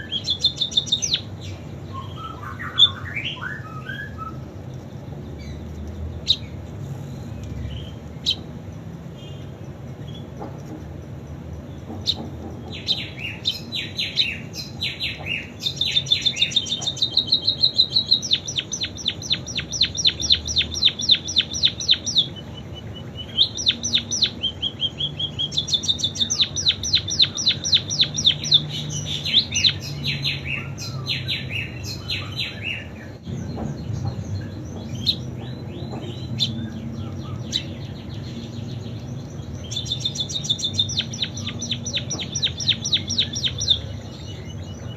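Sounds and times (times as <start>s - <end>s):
pipit trills and chirps: 0.0s - 4.6s, 12.0s - 33.0s, 39.3s - 44.9s
bird whistle: 1.9s - 4.4s, 12.8s - 32.9s, 39.7s - 43.8s.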